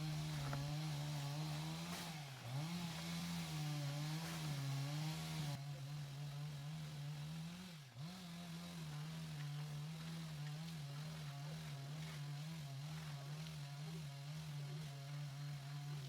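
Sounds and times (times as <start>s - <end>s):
chainsaw engine running: 0.0s - 16.0s.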